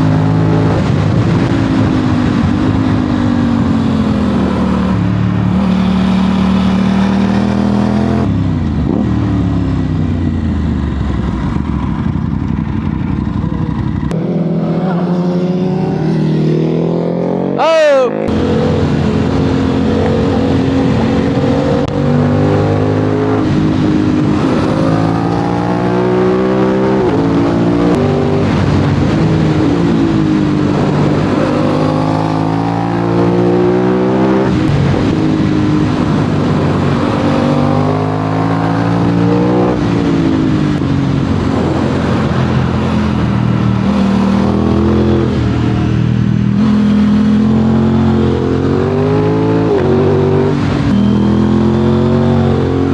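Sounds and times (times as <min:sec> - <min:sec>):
motorcycle engine accelerating: 0:00.0 - 0:52.9.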